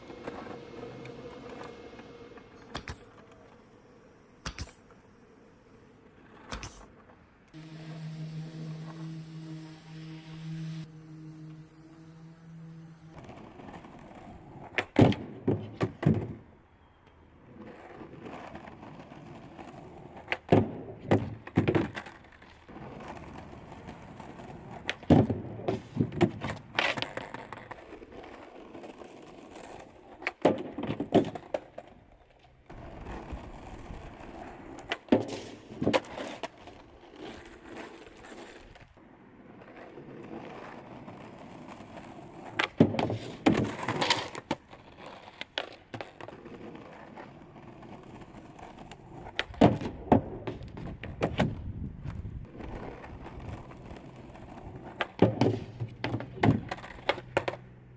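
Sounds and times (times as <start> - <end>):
skateboard wheels rolling: 0.0 - 57.9
skateboard clacks and thunks: 2.6 - 3.6, 13.2 - 16.5, 17.6 - 32.0, 32.7 - 38.9, 39.5 - 57.8.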